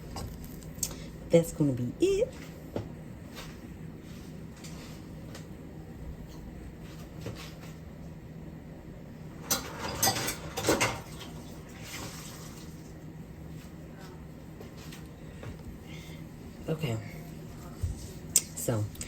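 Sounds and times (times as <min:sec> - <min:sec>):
steady low hum: 0:00.0 - 0:19.0
dishes and utensils clattering: 0:09.4 - 0:12.4.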